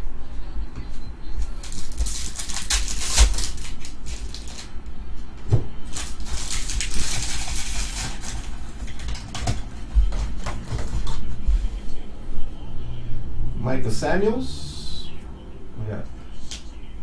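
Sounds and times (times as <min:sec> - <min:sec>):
trading cards scraping and rustling: 0:01.6 - 0:04.7.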